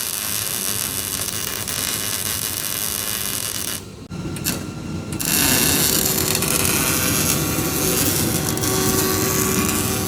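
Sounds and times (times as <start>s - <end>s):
deep machine noise: 0.0s - 10.0s
power tool cutting metal: 5.2s - 10.0s.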